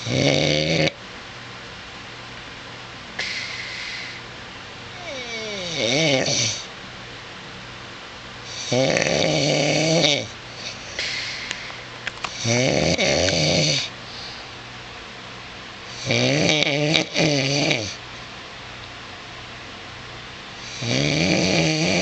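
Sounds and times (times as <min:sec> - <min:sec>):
man snoring loudly: 0:00.0 - 0:01.0, 0:05.0 - 0:06.7, 0:08.5 - 0:10.3, 0:12.4 - 0:13.9, 0:15.9 - 0:18.0, 0:20.6 - 0:22.0
soft hissing breath: 0:03.2 - 0:04.3, 0:10.4 - 0:12.5, 0:13.3 - 0:14.7.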